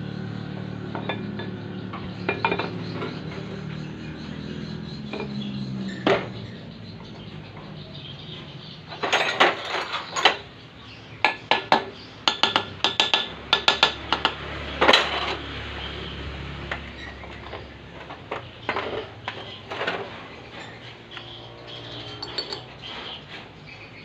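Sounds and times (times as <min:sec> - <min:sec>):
metal tools clinking: 0:08.9 - 0:10.5, 0:16.8 - 0:23.0.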